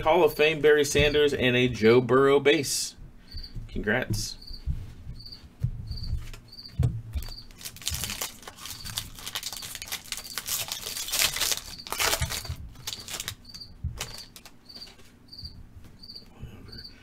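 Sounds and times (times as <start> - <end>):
soft handling bumps: 0.0 - 8.1
foil pack crinkling and tearing: 7.2 - 14.6.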